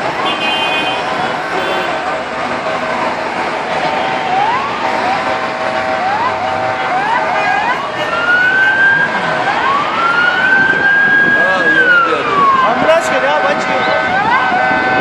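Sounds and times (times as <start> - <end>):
emergency sirens wailing: 0.0 - 15.0
street traffic noise: 0.0 - 15.0.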